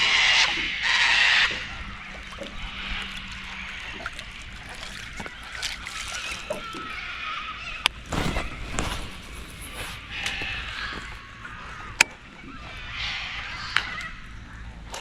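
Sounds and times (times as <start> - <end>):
water splashing and sloshing: 2.2 - 6.9, 8.0 - 11.4.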